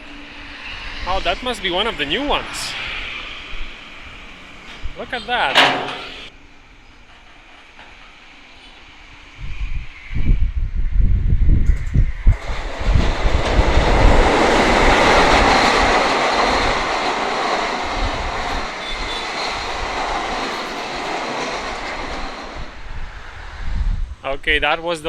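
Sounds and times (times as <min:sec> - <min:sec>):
passenger train passing: 0:00.0 - 0:24.2
train wheels knocking over rail joints: 0:05.3 - 0:06.3, 0:12.4 - 0:22.8.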